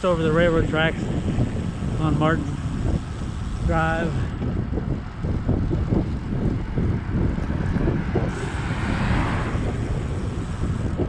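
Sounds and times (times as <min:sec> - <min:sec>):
wind buffeting microphone: 0:00.0 - 0:11.0
rushing hiss: 0:08.3 - 0:11.0.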